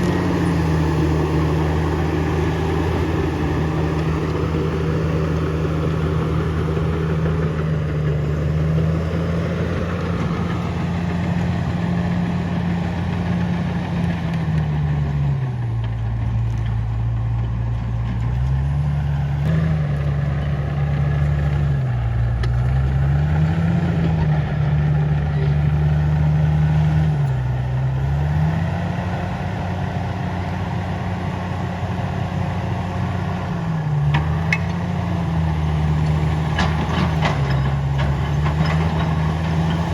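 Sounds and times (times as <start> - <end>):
bulldozer diesel engine under load: 0.0 - 39.9.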